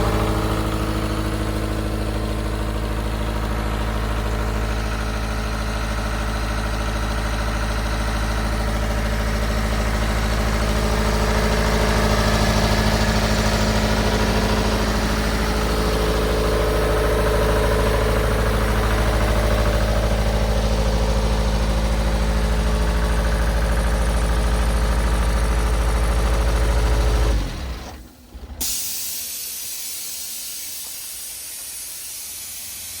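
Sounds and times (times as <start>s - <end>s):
air compressor running: 0.0s - 33.0s
hiss of escaping air: 28.6s - 33.0s.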